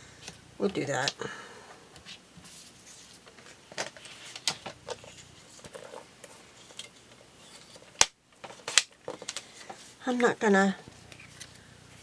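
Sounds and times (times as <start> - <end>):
paper rustling: 2.1 - 10.0.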